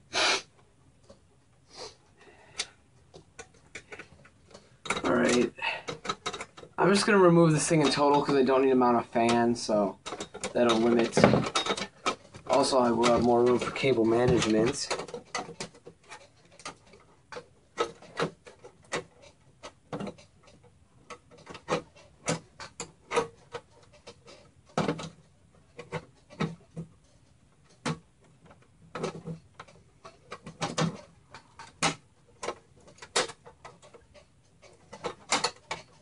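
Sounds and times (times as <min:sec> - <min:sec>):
screwdriver and metal parts rattling: 0:03.0 - 0:36.0.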